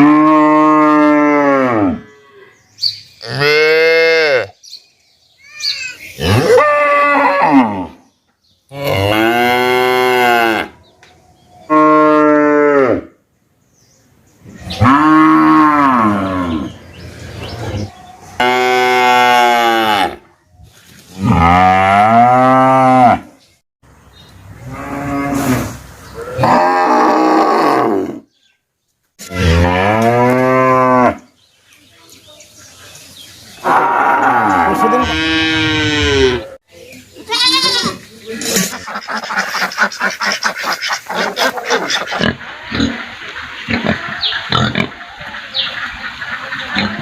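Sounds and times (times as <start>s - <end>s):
cattle mooing: 29.2s - 31.2s, 33.6s - 36.5s.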